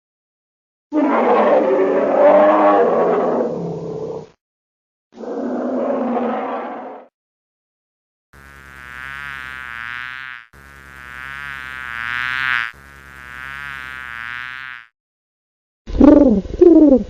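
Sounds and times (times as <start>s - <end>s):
flying insect buzzing: 8.4s - 15.0s.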